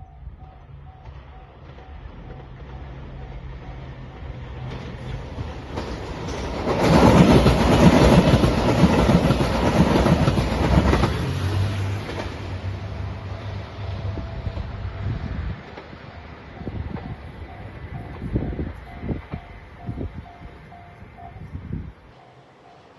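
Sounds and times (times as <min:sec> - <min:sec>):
wheels clattering over rails: 0:00.9 - 0:13.1
level crossing bell ringing: 0:17.5 - 0:22.9.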